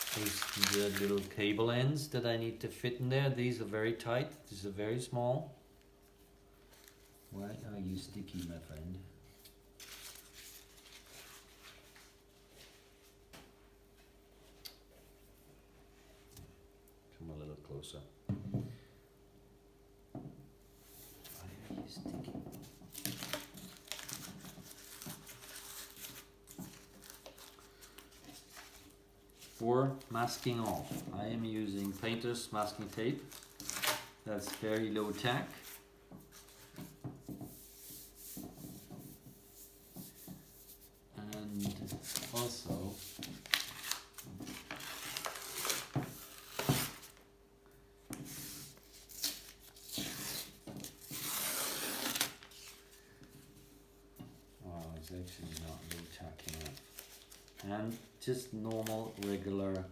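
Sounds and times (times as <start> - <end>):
paper crinkling: 0.0 - 1.6, 22.8 - 36.9, 41.4 - 47.2, 54.8 - 59.9
masking tape peeling: 48.8 - 52.7.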